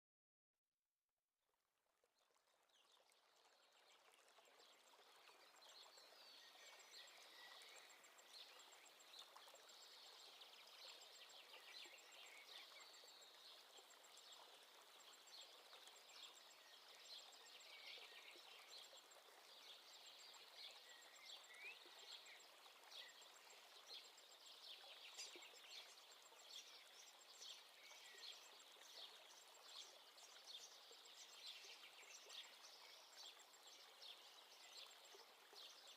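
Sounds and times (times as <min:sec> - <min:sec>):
chorus of bird chirps: 0:15.4 - 0:35.9.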